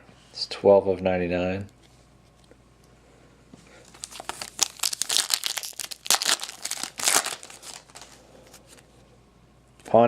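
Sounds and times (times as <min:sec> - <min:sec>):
card pack wrapper crinkling and tearing: 0:03.9 - 0:08.8.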